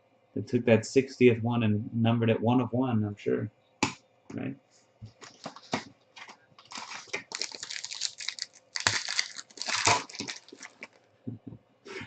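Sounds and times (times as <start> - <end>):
plastic and card crinkling: 5.2 - 11.0.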